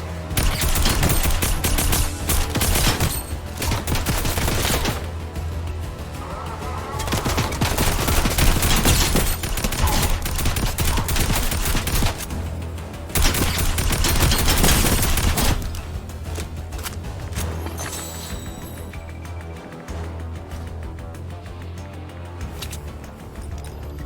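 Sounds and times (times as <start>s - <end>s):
rapid automatic gunfire: 0.3s - 5.4s, 6.9s - 15.9s.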